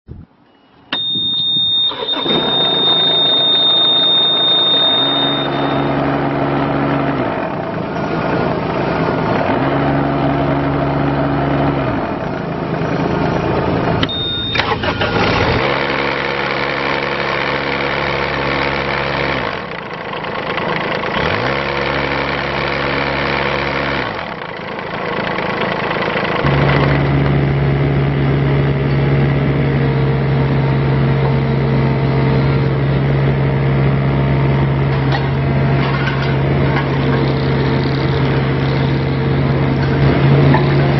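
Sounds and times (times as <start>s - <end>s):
short high beep: 0.4s - 6.0s, 14.0s - 15.0s
excavator diesel engine running: 0.9s - 40.9s.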